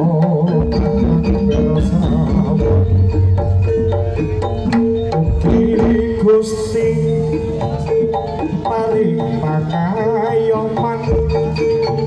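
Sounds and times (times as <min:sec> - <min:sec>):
hand drums beating quick pattern: 0:00.0 - 0:12.0
held pitched tones: 0:00.0 - 0:12.0
struck metallophone keys: 0:00.0 - 0:12.0.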